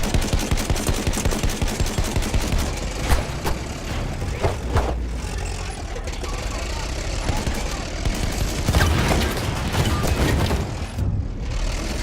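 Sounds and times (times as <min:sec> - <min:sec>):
rapid automatic gunfire: 0:00.0 - 0:03.8, 0:07.1 - 0:10.9.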